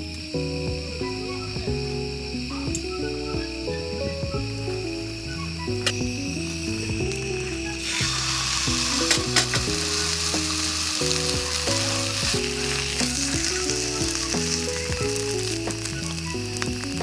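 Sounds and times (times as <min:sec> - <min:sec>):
soft melodic background music: 0:00.0 - 0:17.0
food sizzling in a pan: 0:07.8 - 0:16.6.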